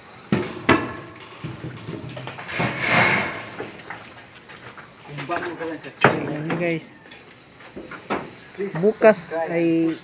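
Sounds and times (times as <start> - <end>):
metal tray scraping: 0.3 - 6.4.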